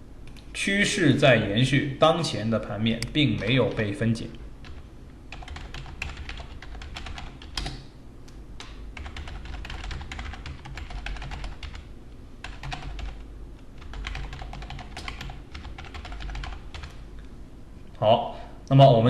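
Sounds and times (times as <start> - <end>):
typing on computer keyboard: 4.6 - 7.8, 8.6 - 13.2, 13.8 - 17.0.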